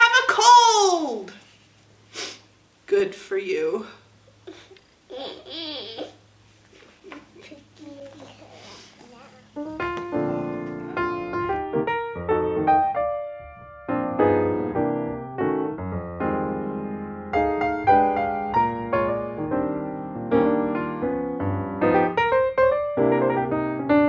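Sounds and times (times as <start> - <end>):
piano tune: 9.5 - 24.0.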